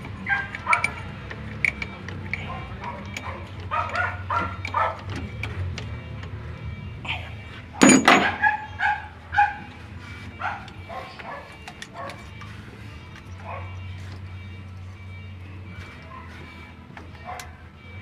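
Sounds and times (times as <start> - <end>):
dog barking: 0.3 - 1.0, 2.4 - 5.1, 8.2 - 9.7, 10.4 - 12.2, 13.4 - 13.8, 17.2 - 17.6.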